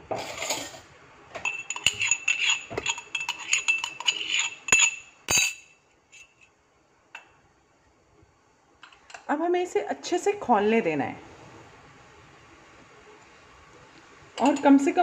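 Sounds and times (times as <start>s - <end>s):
spoon tapping a ringing vessel: 1.4s - 5.7s.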